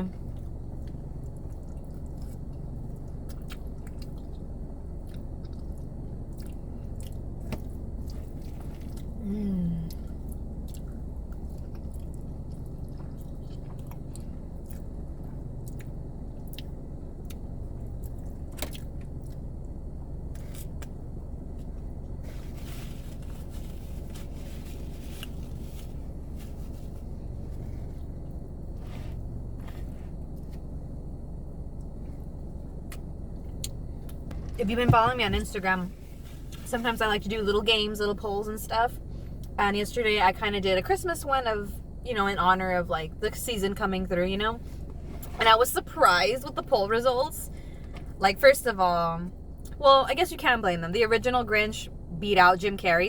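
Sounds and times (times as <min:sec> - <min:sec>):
steady low hum: 0:00.0 - 0:53.0
person humming: 0:09.2 - 0:09.9
person chewing food: 0:09.9 - 0:19.4.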